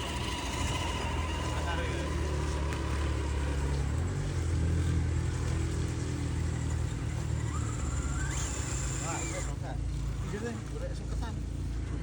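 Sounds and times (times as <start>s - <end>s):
toy car electric motor whining: 0.0s - 3.4s, 6.4s - 9.8s.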